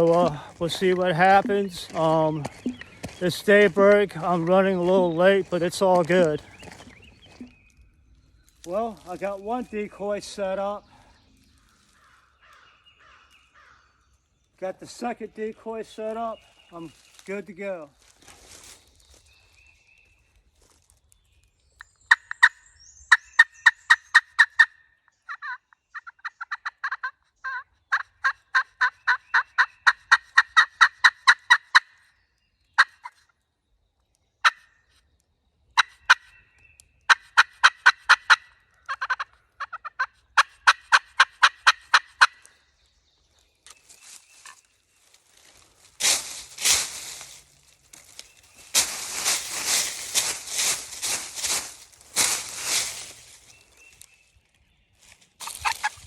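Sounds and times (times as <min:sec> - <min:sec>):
turkey call yelping: 0:22.1 - 0:32.0, 0:32.8 - 0:33.2, 0:34.4 - 0:34.7, 0:35.8 - 0:36.4, 0:37.1 - 0:42.5, 0:55.4 - 0:56.0
loud rustle: 0:45.2 - 0:53.8.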